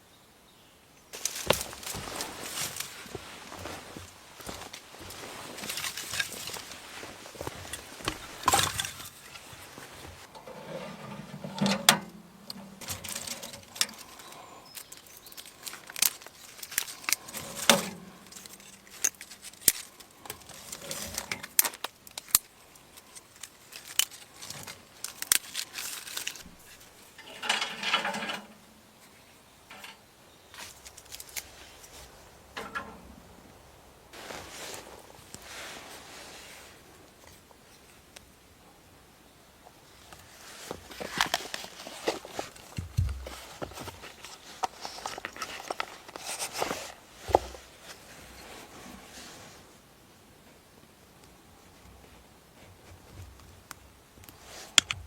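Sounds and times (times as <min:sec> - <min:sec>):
rustling and scraping: 0:01.1 - 0:38.2, 0:39.8 - 0:49.9, 0:51.6 - 0:55.0
clicks and knocks: 0:32.6 - 0:33.1.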